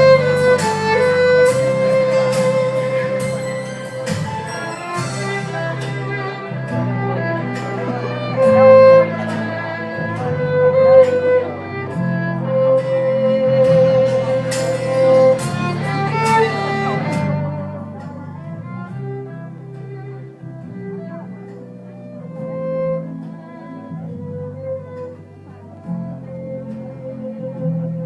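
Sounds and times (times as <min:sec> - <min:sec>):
instrumental wedding music: 0:00.0 - 0:28.0.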